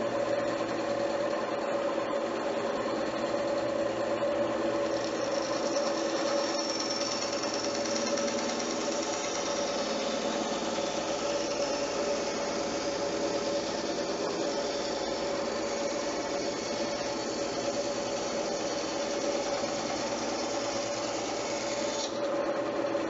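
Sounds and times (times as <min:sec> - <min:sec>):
power tool working wood: 0:00.0 - 0:23.0.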